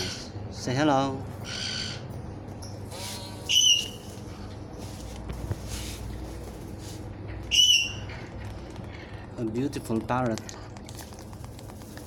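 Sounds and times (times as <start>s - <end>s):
cockatoo whistle-like calls: 3.4s - 4.1s, 7.5s - 8.1s.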